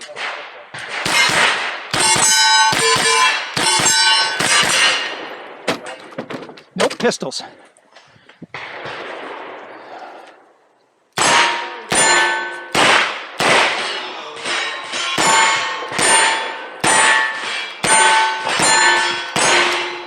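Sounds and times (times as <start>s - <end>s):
pistol shots: 0.0s - 5.9s, 11.2s - 14.2s, 15.2s - 20.0s
metallic clang of steel target: 1.0s - 6.1s, 11.2s - 20.0s.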